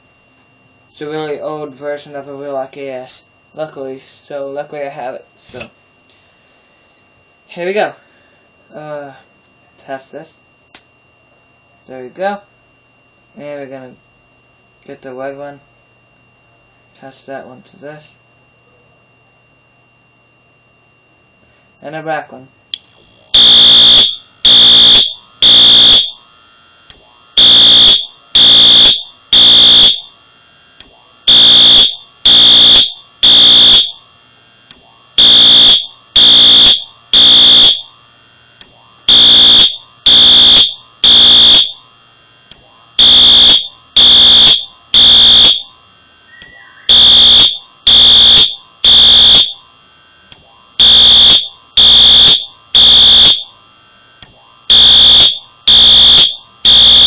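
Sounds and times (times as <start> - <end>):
fire alarm horn blasts: 23.3 - 26.4, 27.4 - 30.2, 31.3 - 34.1, 35.2 - 38.0, 39.1 - 41.8, 43.0 - 45.8, 46.5 - 49.8, 50.8 - 53.6, 54.7 - 57.0.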